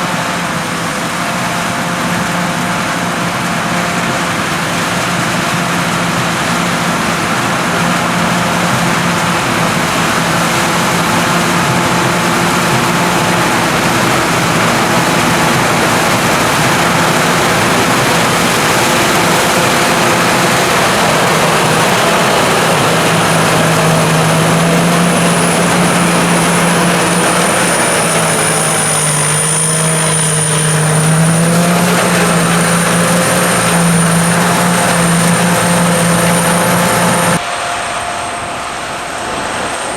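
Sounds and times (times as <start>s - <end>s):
combine harvester running: 0.0s - 39.9s
high machinery whine: 0.0s - 39.9s.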